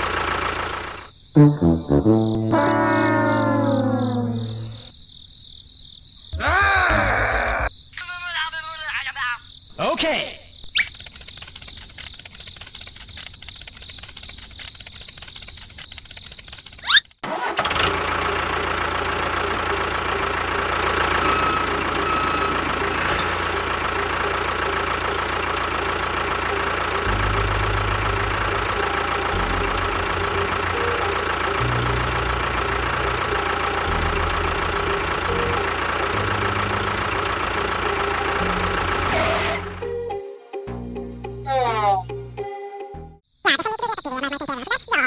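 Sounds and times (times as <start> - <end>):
sharp click: 10.8 - 17.2
small machine motor running: 10.8 - 39.8.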